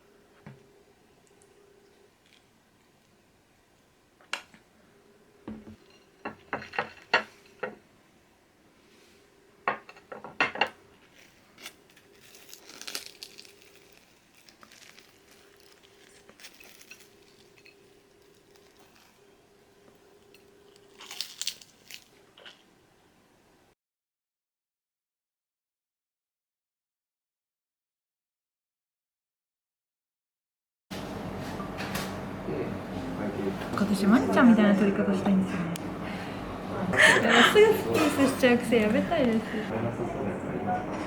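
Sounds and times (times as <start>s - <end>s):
faint steady hum: 0.0s - 23.7s, 31.0s - 41.0s
rustling: 11.0s - 22.6s.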